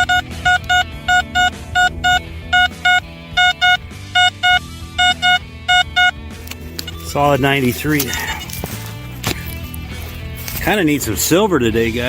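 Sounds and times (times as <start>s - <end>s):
metal detector pinpointer double beeps: 0.0s - 6.2s
background music: 0.0s - 12.0s.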